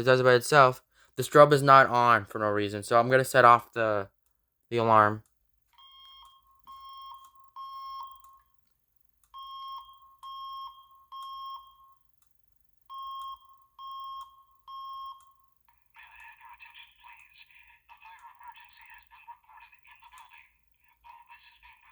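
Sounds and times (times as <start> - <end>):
recorded voice evacuation message: 0.0 - 4.1, 4.7 - 5.2, 15.9 - 21.9
fire alarm beeps: 5.8 - 8.6, 9.3 - 12.2, 12.8 - 15.6.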